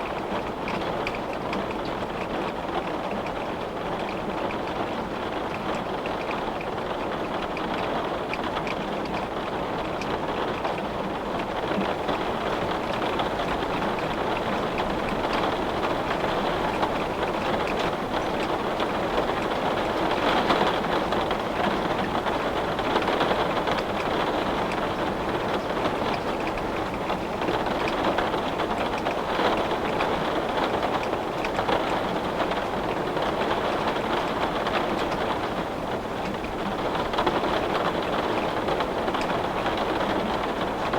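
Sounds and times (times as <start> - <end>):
rain on a window: 0.0 - 40.9
raindrops ticking on glass: 0.0 - 40.9.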